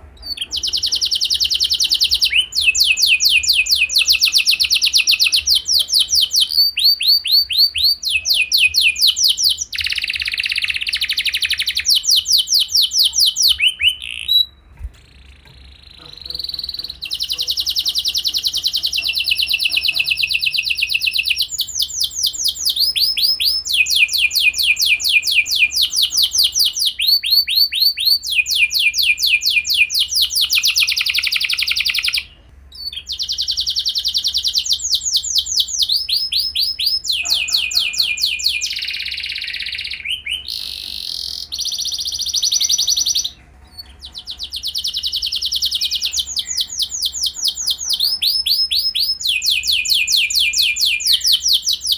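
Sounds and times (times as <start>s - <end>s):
canary singing fast trills: 0.0s - 51.9s.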